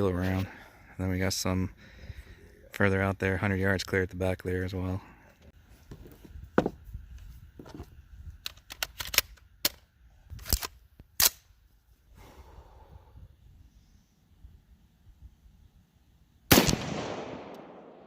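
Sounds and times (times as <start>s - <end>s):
rifle metallic clicks: 8.4s - 11.5s, 16.5s - 18.0s.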